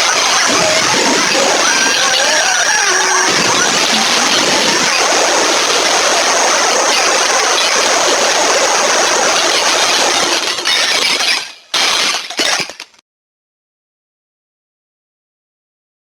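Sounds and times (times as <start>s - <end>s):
cartoon crash sound effects: 0.0s - 13.0s
glass breaking: 9.9s - 13.0s.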